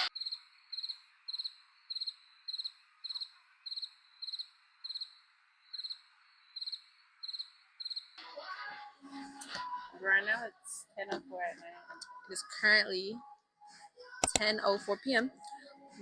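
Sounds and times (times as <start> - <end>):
cricket chirping: 0.0 - 8.2.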